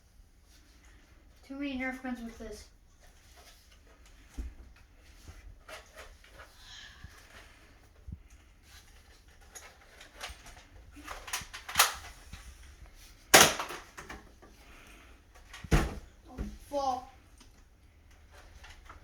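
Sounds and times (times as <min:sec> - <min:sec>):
plastic clicks and rattles: 0:09.0 - 0:12.2
toy blaster firing pop: 0:13.4 - 0:13.8.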